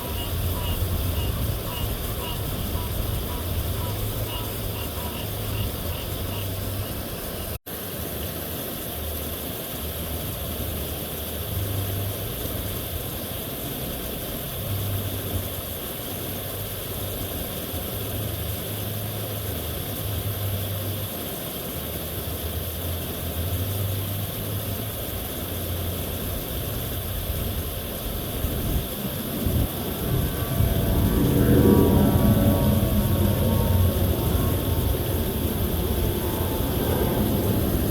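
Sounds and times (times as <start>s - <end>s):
water rushing over spillway: 0.0s - 37.9s.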